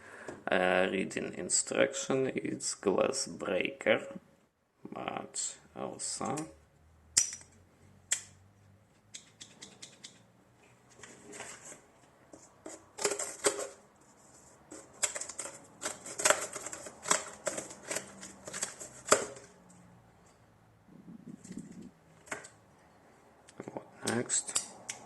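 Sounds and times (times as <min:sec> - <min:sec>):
multi-tool metallic clicks and snaps: 0:07.1 - 0:08.4, 0:09.0 - 0:10.3, 0:23.5 - 0:25.0.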